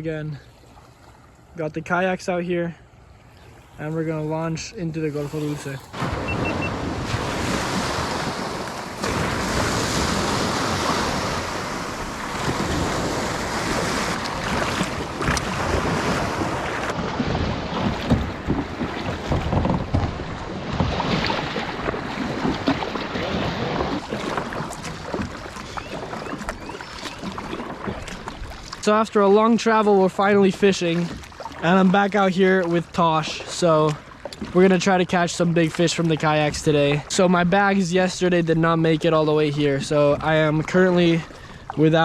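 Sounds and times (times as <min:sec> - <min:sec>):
small waves breaking: 0:00.0 - 0:01.6, 0:02.8 - 0:42.0
wind buffeting microphone: 0:03.7 - 0:28.8.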